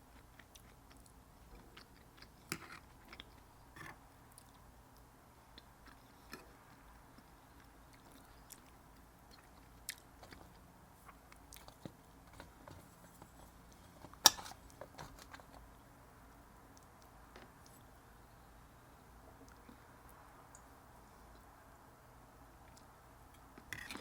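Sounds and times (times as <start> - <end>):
person chewing crunchy food: 5.6 - 15.7.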